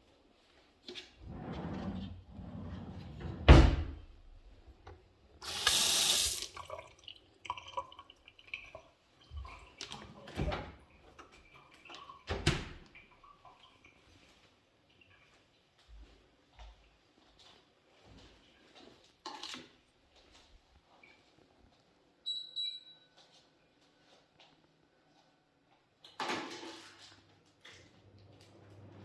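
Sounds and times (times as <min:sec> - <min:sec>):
water tap running: 0:05.4 - 0:07.1.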